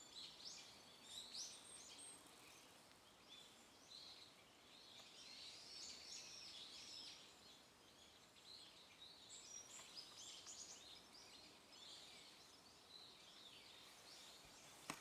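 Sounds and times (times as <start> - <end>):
songbirds chirping: 0.0 - 15.0.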